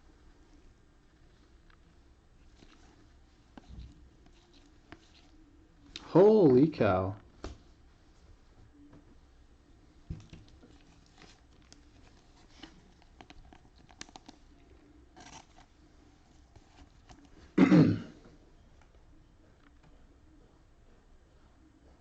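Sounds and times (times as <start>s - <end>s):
clicks and rustles of cards: 10.1s - 17.6s
loud cough: 17.6s - 18.2s.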